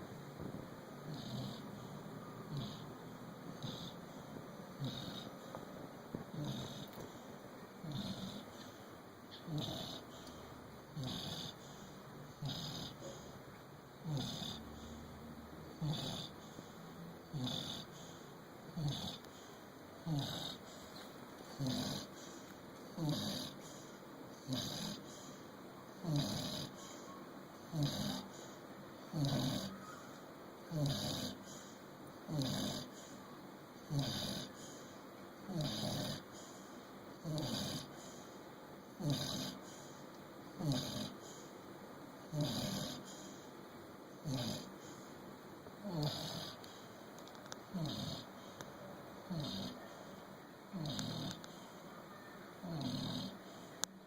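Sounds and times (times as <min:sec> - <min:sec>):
person snoring: 0:01.0 - 0:02.9, 0:03.5 - 0:05.4, 0:06.3 - 0:07.0, 0:07.8 - 0:08.8, 0:09.5 - 0:13.3, 0:14.0 - 0:15.1, 0:15.8 - 0:16.6, 0:17.3 - 0:18.2, 0:18.8 - 0:19.3, 0:20.0 - 0:20.8, 0:21.6 - 0:25.4, 0:26.0 - 0:27.0, 0:27.7 - 0:28.5, 0:29.1 - 0:29.8, 0:30.7 - 0:33.1, 0:33.9 - 0:34.7, 0:35.5 - 0:36.3, 0:37.2 - 0:38.2, 0:39.0 - 0:39.9, 0:40.6 - 0:41.2, 0:42.3 - 0:43.4, 0:44.2 - 0:44.7, 0:45.8 - 0:46.6, 0:47.7 - 0:48.3, 0:49.3 - 0:50.0, 0:50.7 - 0:51.8, 0:52.6 - 0:53.7.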